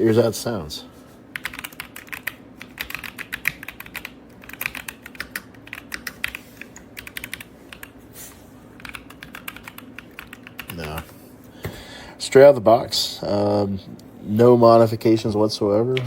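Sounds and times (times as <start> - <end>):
mechanical keyboard typing: 1.4 - 7.9, 8.8 - 11.0.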